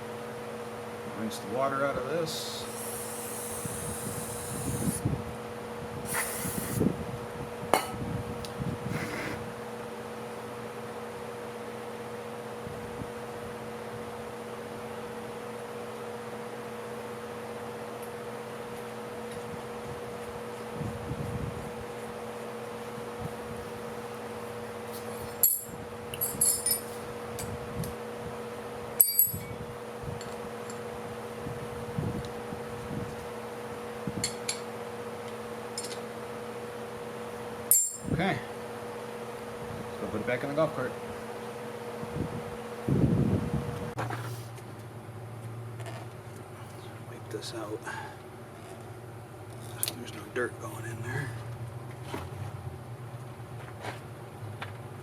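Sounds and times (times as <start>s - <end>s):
compressed air blow gun hissing: 2.4s - 5.1s, 6.0s - 6.9s, 8.9s - 9.4s
small metal parts clinking: 25.2s - 27.0s, 29.0s - 29.5s.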